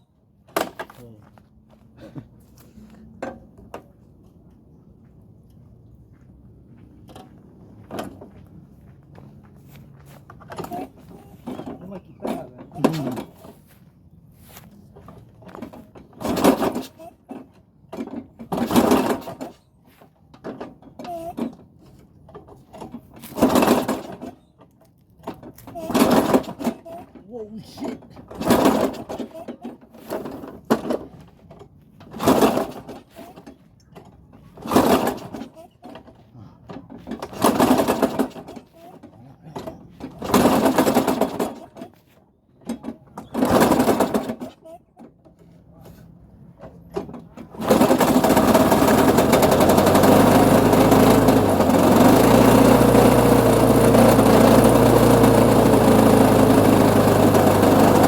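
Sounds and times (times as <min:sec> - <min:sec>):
petrol engine pull-starter cranking: 0:10.4 - 0:13.6, 0:15.1 - 0:19.6, 0:20.3 - 0:42.0, 0:42.6 - 0:58.0
rasping bursts: 0:47.6 - 0:58.0.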